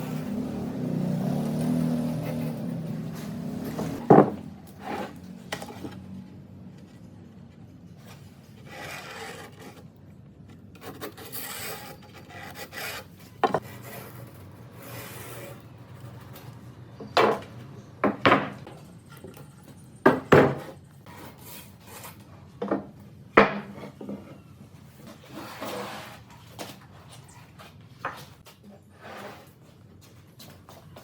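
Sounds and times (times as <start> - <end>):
hand tool scraping wood: 8.6 - 9.9, 10.8 - 16.3, 25.0 - 26.3.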